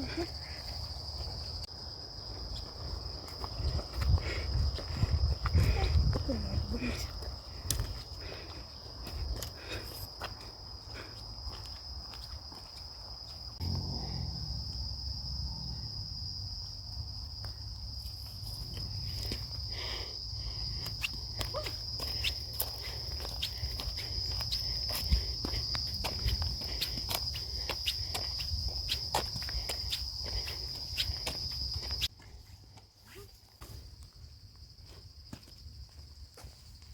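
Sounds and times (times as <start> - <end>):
insects chirring: 0.0 - 36.9
footsteps crunching on path: 0.7 - 13.5, 21.0 - 36.9.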